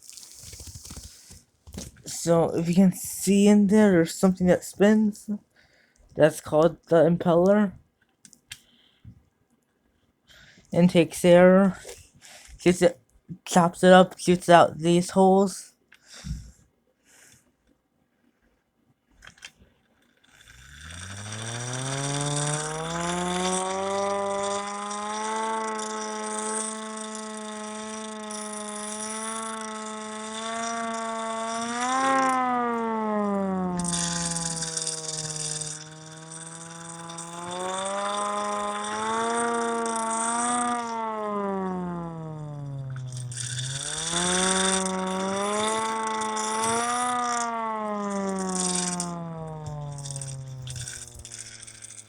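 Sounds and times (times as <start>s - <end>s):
crank gearing rattling: 20.2s - 52.0s
hand-crank siren wailing: 20.7s - 52.0s.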